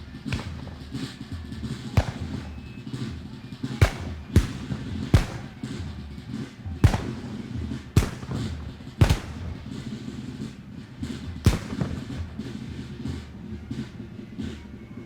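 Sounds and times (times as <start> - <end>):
fainter gunshots: 0.0 - 6.0, 6.8 - 10.5, 11.4 - 12.5
loud sharp gunshots: 0.0 - 13.2
low rumble of distant fighting: 0.0 - 14.8.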